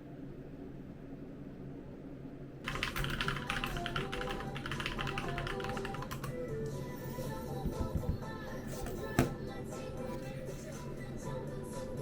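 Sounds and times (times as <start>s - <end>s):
rapid keyboard typing: 2.7s - 6.4s
background music: 3.4s - 12.0s.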